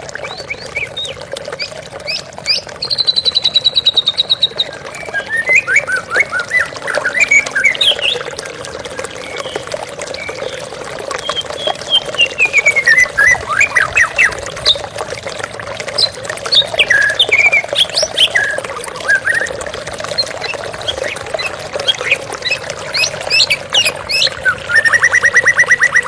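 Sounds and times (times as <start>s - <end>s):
flowing water rushing: 0.0s - 26.0s
bird singing whistled notes: 2.8s - 8.2s, 20.4s - 26.0s.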